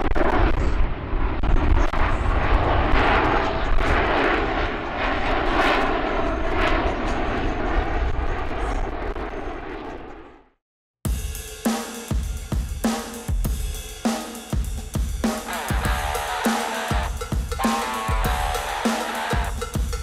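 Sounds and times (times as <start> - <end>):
jet engines roaring past: 0.0 - 10.5, 15.4 - 19.6.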